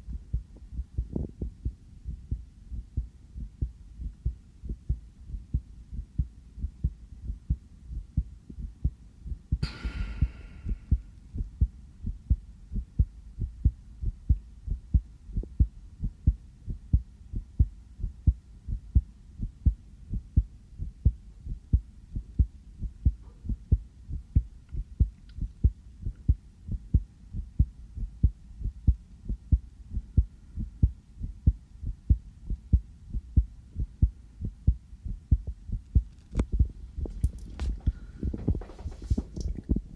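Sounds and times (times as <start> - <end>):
heartbeat thumps: 0.0 - 39.9
noise burst: 9.6 - 11.5.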